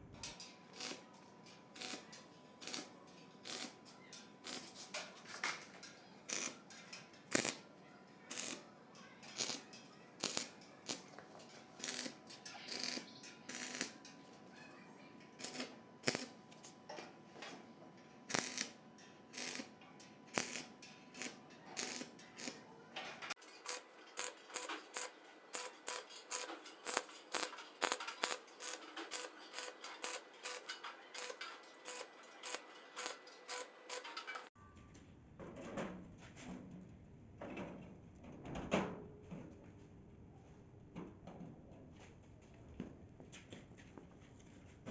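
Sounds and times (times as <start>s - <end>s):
small hard objects clicking: 23.6s - 34.5s.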